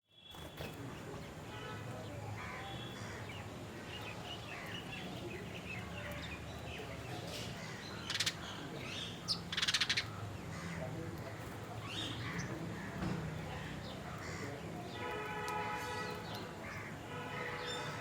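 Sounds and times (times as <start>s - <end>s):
wild birds chirping and trilling: 0.2s - 18.0s
crows cawing: 2.4s - 3.4s, 9.5s - 11.0s, 12.2s - 14.7s.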